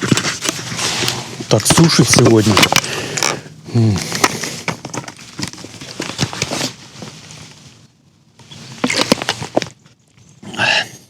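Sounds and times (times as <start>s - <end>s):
clicks and rustle of gear handled: 0.0s - 3.4s, 4.0s - 7.5s, 8.6s - 10.3s.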